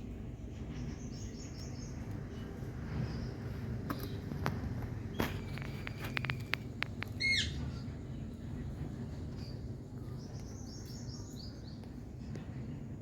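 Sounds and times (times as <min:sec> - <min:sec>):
low background noise: 0:00.0 - 0:13.0
parakeet high chirps: 0:07.1 - 0:07.6.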